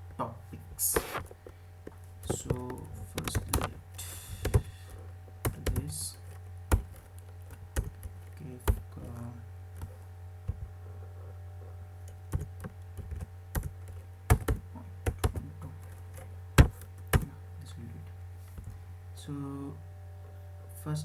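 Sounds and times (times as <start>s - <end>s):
low electrical hum: 0.0s - 21.0s
keyboard typing: 2.2s - 10.7s, 12.0s - 17.3s.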